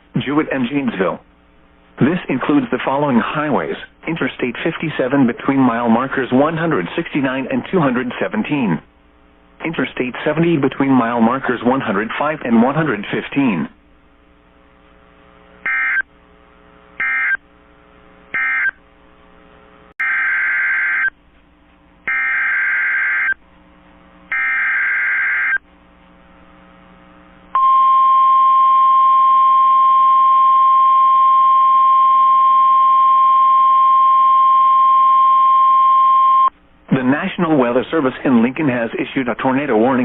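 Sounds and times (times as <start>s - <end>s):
loud steady alarm tone: 15.6s - 16.1s, 17.0s - 17.4s, 18.3s - 18.8s, 20.0s - 21.1s, 22.1s - 23.4s, 24.3s - 25.6s.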